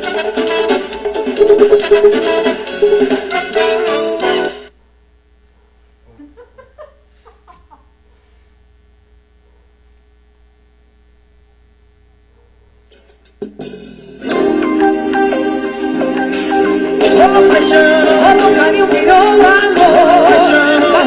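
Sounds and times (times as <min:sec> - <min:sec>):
forro music: 0:00.0 - 0:04.7, 0:12.9 - 0:21.0
low mains hum: 0:04.7 - 0:13.5.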